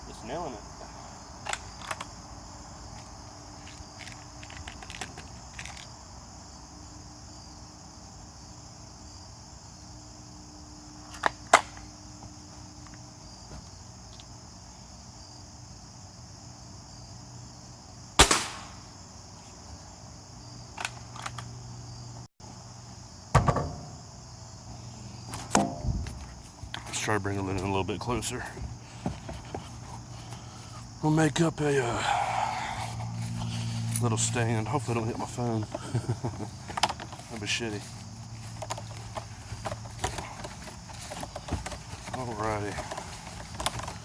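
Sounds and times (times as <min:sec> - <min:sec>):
insects chirring: 0:00.0 - 0:44.0
gunshots: 0:18.2 - 0:18.8
light knocks: 0:23.4 - 0:24.0.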